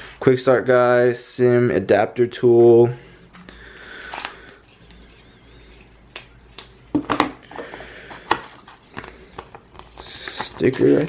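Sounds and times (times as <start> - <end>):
paper rustling: 8.2 - 11.0.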